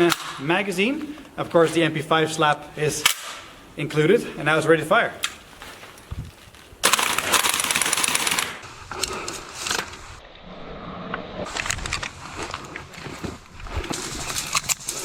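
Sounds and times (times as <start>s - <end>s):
airsoft gun burst: 6.8s - 8.6s.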